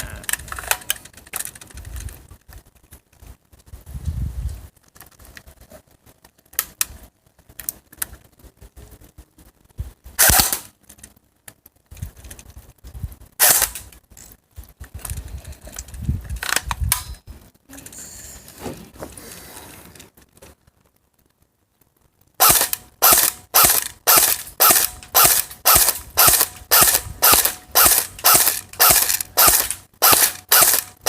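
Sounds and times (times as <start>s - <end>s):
air rifle shots: 10.2s - 10.7s, 22.4s - 31.0s.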